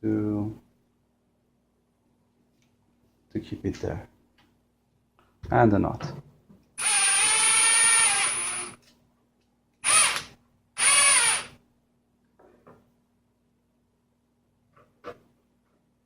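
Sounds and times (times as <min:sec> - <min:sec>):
power drill driving screw: 0:06.8 - 0:08.8, 0:09.8 - 0:11.6.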